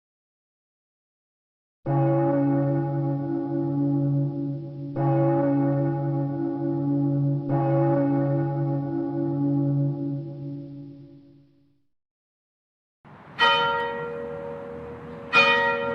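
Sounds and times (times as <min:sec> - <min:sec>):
church bell tolling: 0:01.9 - 0:11.4, 0:13.4 - 0:15.9.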